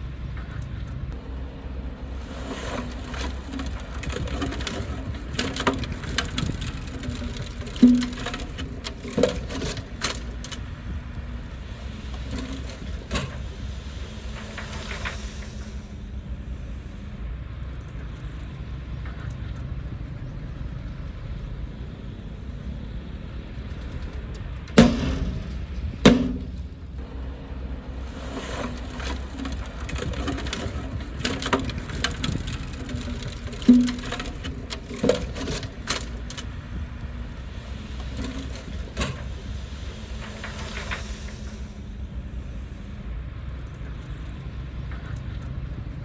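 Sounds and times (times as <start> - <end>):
heavy machine engine rumble: 0.0 - 46.0
sharp metal clanks: 24.8 - 27.0.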